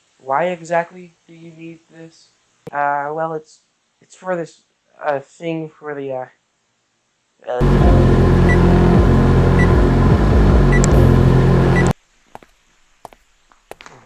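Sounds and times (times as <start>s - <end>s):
microwave oven humming: 7.6s - 11.9s.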